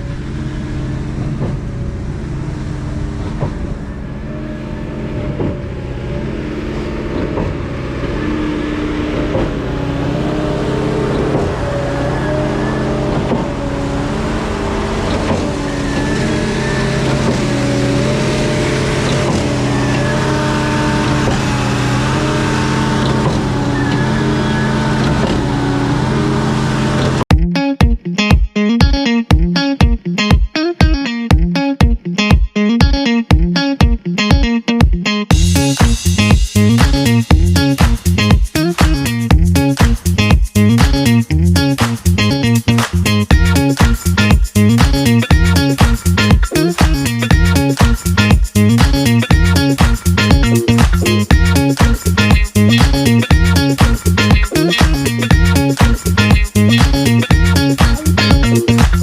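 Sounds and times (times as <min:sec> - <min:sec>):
motor whine: 0:00.0 - 0:27.2
pump engine drone: 0:00.0 - 0:27.3, 0:35.3 - 0:42.2, 0:42.9 - 0:59.0.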